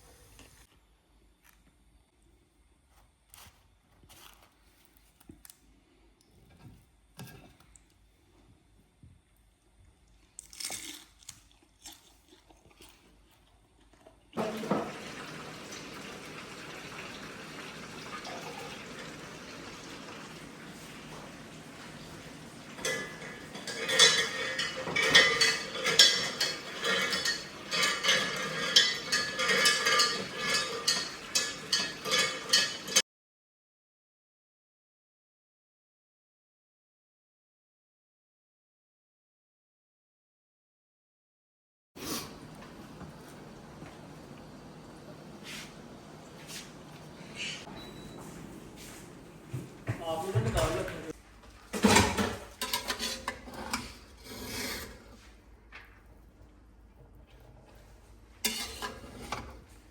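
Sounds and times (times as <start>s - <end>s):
water running: 14.3s - 33.0s, 42.0s - 55.2s
dishes and cutlery clattering: 14.4s - 17.2s, 18.0s - 33.0s, 51.7s - 55.3s, 58.4s - 59.9s.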